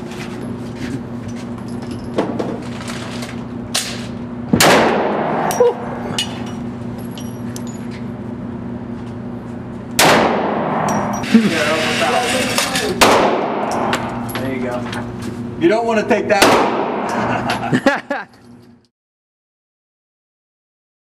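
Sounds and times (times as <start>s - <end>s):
steady low hum: 0.0s - 18.9s
gunshots echoing indoors: 4.6s - 5.6s, 10.0s - 11.1s, 13.0s - 14.2s, 16.4s - 17.2s.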